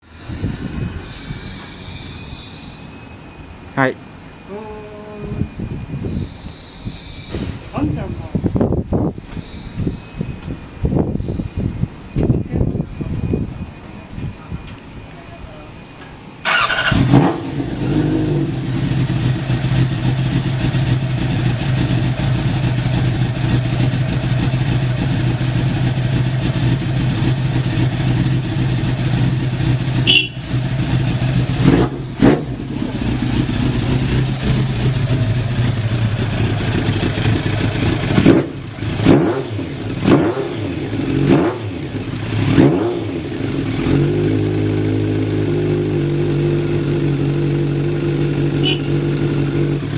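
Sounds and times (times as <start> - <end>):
motorcycle engine revving: 16.4 - 49.9
motorcycle engine starting: 16.4 - 49.9
motorcycle engine idling: 18.5 - 31.6, 32.5 - 39.0, 43.2 - 49.9.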